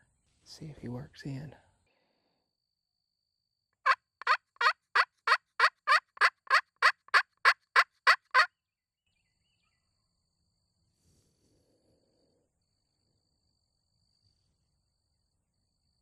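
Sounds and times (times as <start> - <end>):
turkey call hen yelps: 3.8 - 8.5.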